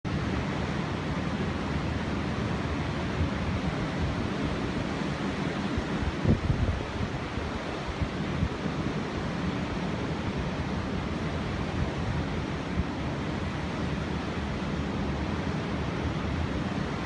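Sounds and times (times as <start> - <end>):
heavy surf: 0.1 - 17.0
strong wind: 0.1 - 17.0
wind buffeting microphone: 3.2 - 9.4.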